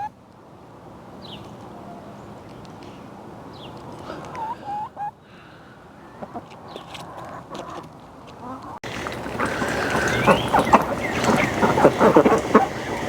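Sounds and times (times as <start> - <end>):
steady background noise: 0.0 - 13.0
chickens clucking: 4.1 - 5.2, 6.1 - 13.0.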